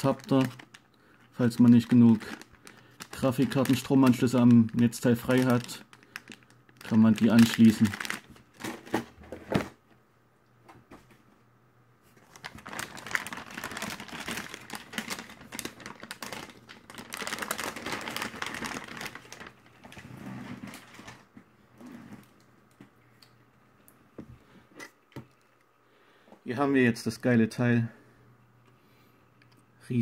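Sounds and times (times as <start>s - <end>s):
packaging crinkling and rustling: 0.0s - 9.8s, 12.1s - 21.4s.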